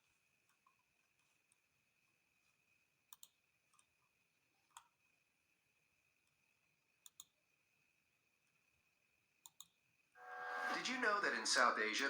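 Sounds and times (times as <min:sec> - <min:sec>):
soft clicks: 0:03.1 - 0:04.0, 0:07.0 - 0:07.4
thin high whine: 0:10.2 - 0:12.0.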